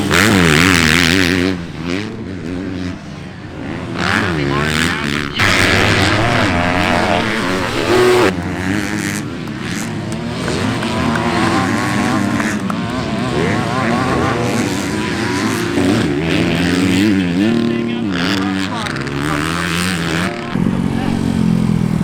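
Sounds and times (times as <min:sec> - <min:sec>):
motocross bike engines revving: 0:00.0 - 0:22.0.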